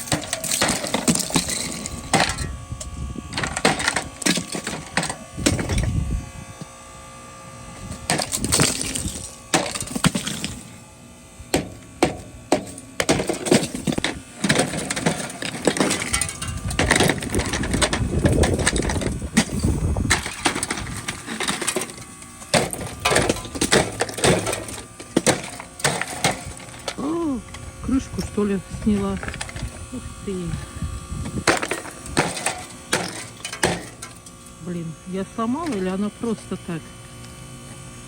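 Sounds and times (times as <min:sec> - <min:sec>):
ice cracking and clinking: 0:08.1 - 0:10.7.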